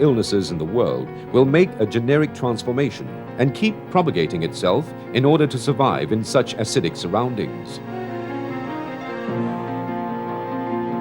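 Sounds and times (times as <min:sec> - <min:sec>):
soft background music: 0:00.0 - 0:11.0.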